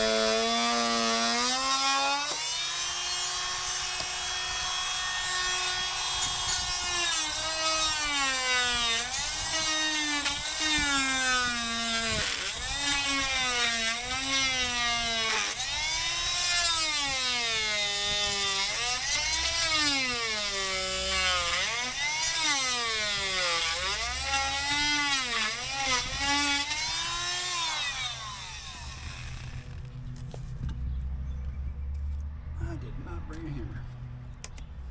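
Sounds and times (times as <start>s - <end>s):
power drill boring through wood: 0.0s - 29.9s.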